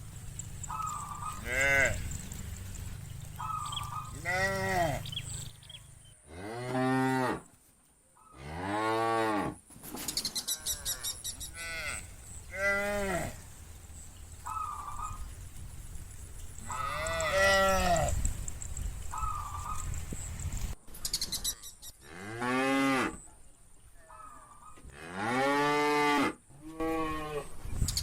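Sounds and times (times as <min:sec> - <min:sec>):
cattle mooing: 0:00.2 - 0:07.4, 0:10.7 - 0:13.6, 0:16.6 - 0:18.2.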